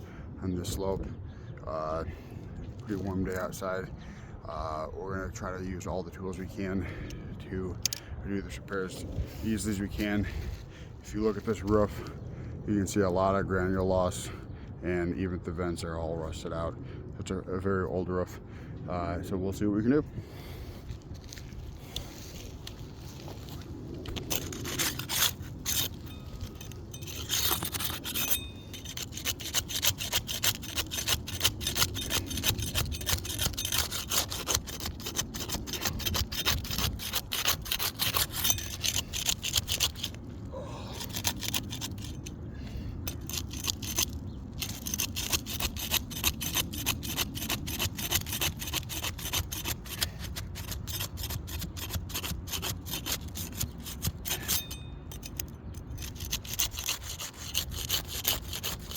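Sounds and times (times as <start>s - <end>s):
trowel scraping under shingles: 20.6s - 58.9s.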